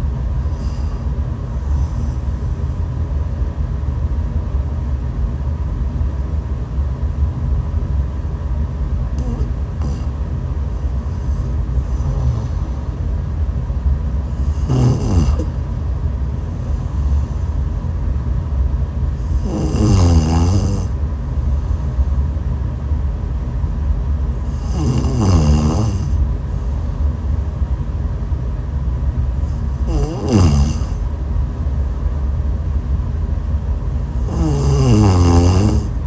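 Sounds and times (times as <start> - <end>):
steady low rumble: 0.0 - 36.0
woman snoring: 0.5 - 2.3, 9.2 - 10.2, 11.2 - 12.8, 14.3 - 15.6, 19.2 - 21.0, 24.5 - 26.2, 29.5 - 31.0, 34.1 - 36.0.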